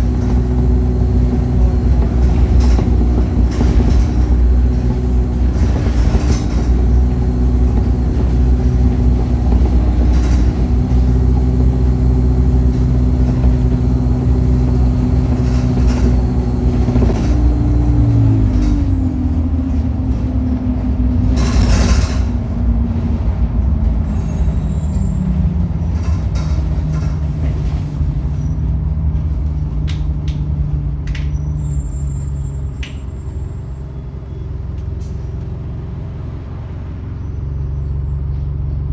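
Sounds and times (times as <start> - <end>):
gearbox changing gear: 0.0 - 19.8
bus diesel engine under load: 0.0 - 38.9.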